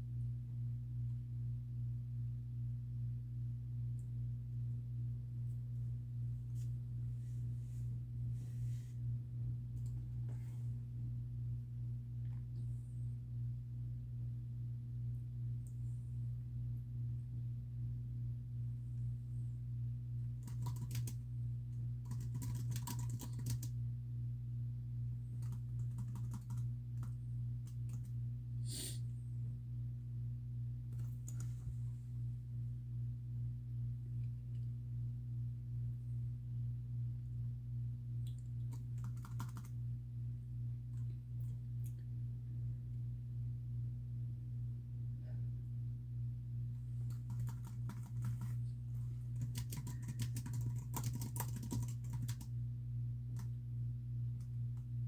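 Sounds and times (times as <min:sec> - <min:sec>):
steady low hum: 0:00.0 - 0:55.0
typing on computer keyboard: 0:20.4 - 0:21.2, 0:22.0 - 0:23.8, 0:25.4 - 0:28.1, 0:38.7 - 0:39.8, 0:47.1 - 0:48.6, 0:49.3 - 0:52.5.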